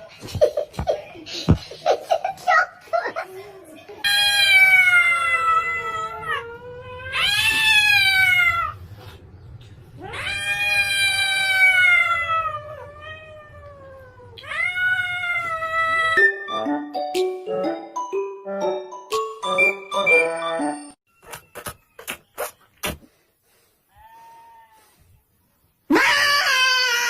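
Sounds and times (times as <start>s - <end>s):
cat yowling: 4.1s - 8.8s, 10.0s - 16.2s, 25.9s - 27.0s.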